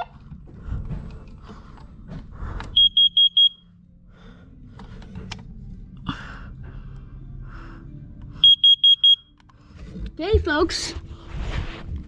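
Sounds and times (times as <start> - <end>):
carbon monoxide alarm beeps: 2.7 - 3.8, 8.4 - 9.4.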